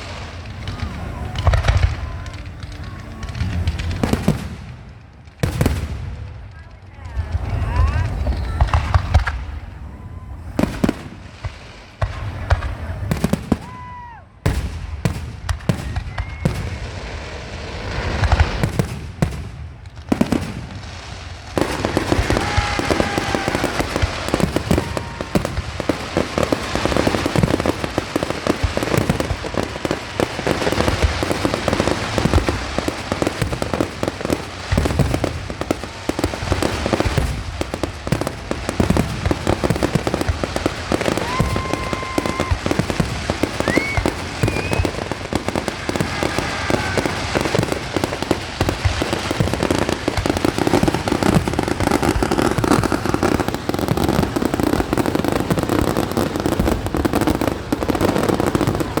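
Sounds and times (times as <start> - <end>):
fireworks exploding: 0.0 - 59.0
firework whistles: 15.5 - 19.1, 21.6 - 59.0.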